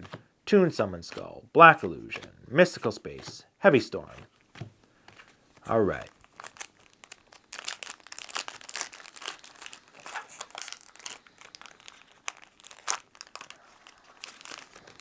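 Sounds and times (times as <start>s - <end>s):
foil wrapper crinkling: 5.2s - 15.0s.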